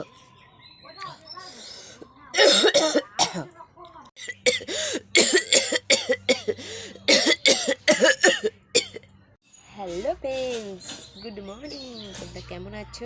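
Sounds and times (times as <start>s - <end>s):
person coughing: 2.4s - 3.5s, 4.2s - 9.0s.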